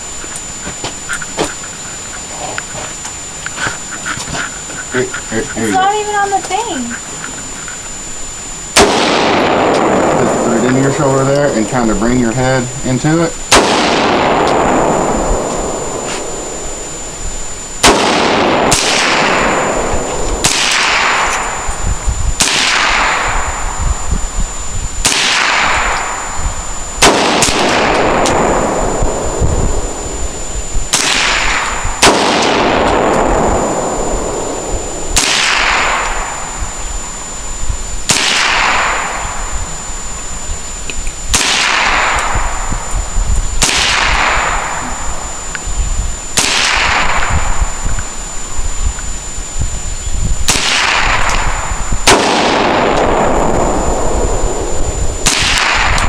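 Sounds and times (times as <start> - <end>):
rifle shots echoing: 8.7 - 11.8, 13.0 - 16.9, 17.8 - 21.7, 22.4 - 23.6, 25.0 - 26.4, 27.0 - 29.3, 30.9 - 36.5, 38.0 - 39.5, 41.3 - 42.7, 43.6 - 45.3, 46.4 - 47.8, 50.5 - 56.0.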